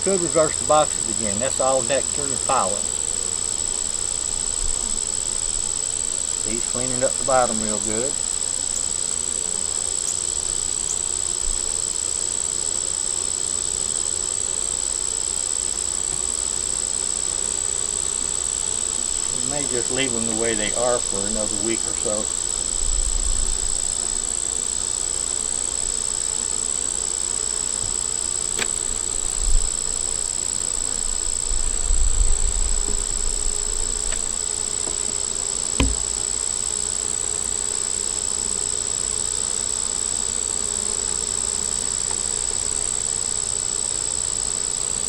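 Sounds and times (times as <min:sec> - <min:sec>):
high-pitched insect trill: 0:00.0 - 0:45.0
honey bees buzzing: 0:00.0 - 0:45.0
sharp click: 0:28.6 - 0:28.8
low bumps: 0:35.8 - 0:36.3.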